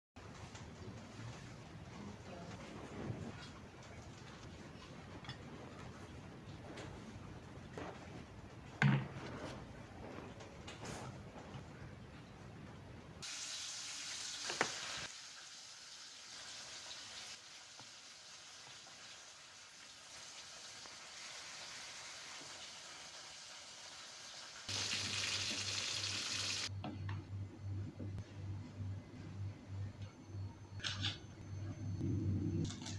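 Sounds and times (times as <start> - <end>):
food sizzling in hot oil: 13.2 - 26.7.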